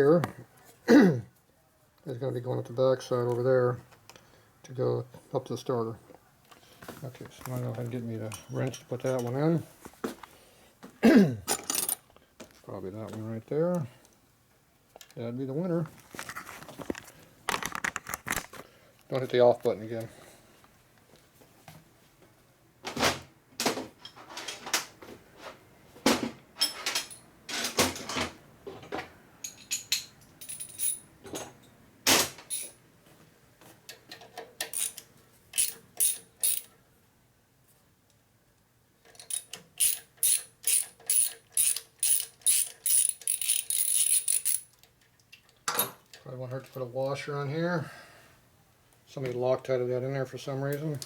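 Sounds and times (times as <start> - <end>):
ratchet wrench clicking: 34.6 - 36.7, 39.2 - 44.8
tools and parts knocking: 35.6 - 36.7, 39.1 - 44.7.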